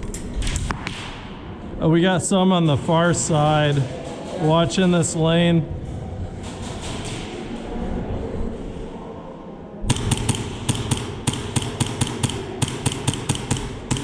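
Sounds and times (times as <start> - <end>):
arena background noise: 0.0 - 14.0
airsoft pistol shots: 9.9 - 14.0.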